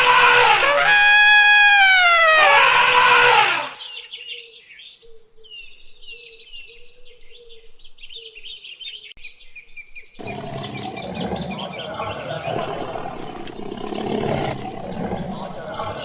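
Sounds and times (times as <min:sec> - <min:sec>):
loud falling call: 0:00.0 - 0:03.8
small birds chirping: 0:03.6 - 0:16.0
rough animal sound: 0:10.2 - 0:16.0.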